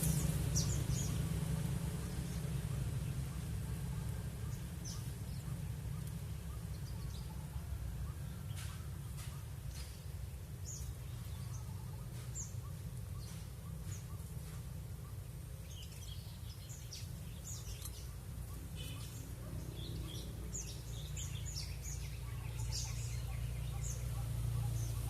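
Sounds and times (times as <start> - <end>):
steady low rumble: 0.0 - 8.2
songbirds chirping: 0.0 - 25.0.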